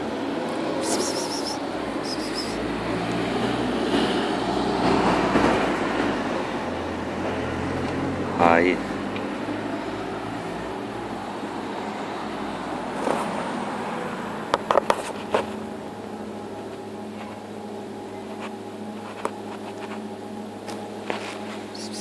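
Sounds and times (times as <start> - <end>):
machine hum: 0.0 - 22.0.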